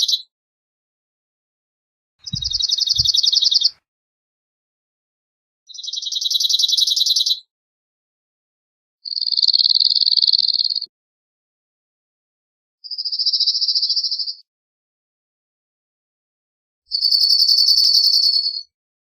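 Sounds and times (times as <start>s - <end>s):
bird singing rapid trills: 2.3s - 3.8s, 5.7s - 7.5s, 9.0s - 10.9s, 12.8s - 14.4s, 16.9s - 18.7s.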